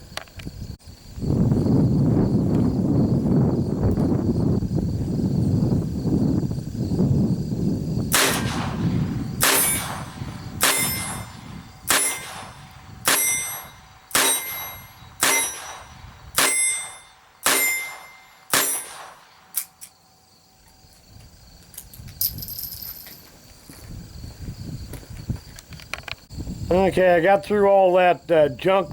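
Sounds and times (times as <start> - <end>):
revolver gunshots: 8.1 - 19.8.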